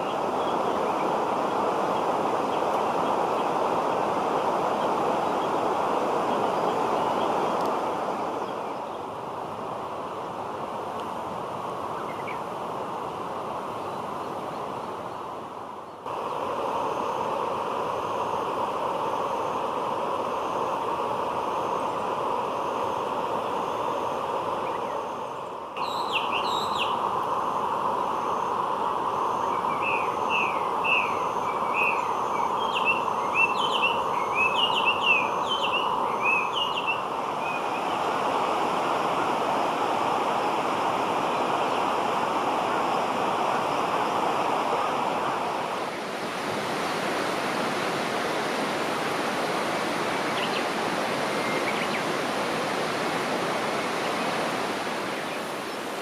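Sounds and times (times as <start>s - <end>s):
running water rushing: 16.1s - 56.0s.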